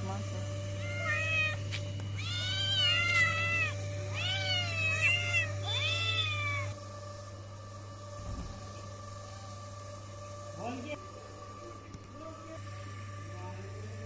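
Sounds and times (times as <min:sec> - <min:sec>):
steady low hum: 0:00.0 - 0:14.0
cat meowing: 0:00.8 - 0:01.6, 0:02.2 - 0:06.7.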